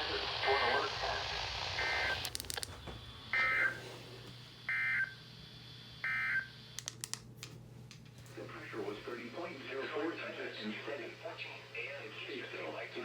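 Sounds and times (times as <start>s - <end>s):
receiver hiss and hum: 0.0s - 13.0s
sharp clicks: 2.2s - 2.7s, 6.8s - 8.0s.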